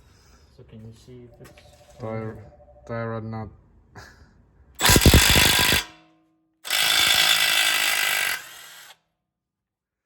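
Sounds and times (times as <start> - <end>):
impact wrench hammering: 4.8 - 6.0.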